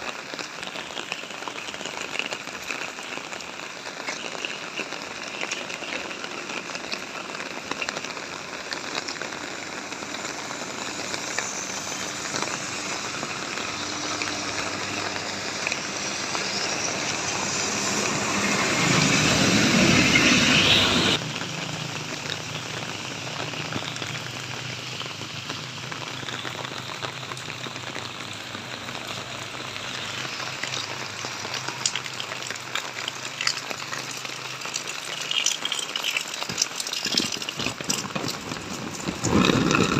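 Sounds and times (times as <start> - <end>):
steady rain falling: 0.0 - 39.9
rushing noise: 8.8 - 35.8.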